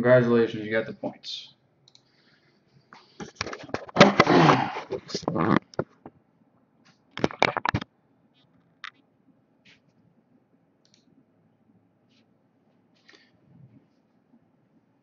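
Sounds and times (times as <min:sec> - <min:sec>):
sharp clicks and knocks: 0:07.2 - 0:07.9.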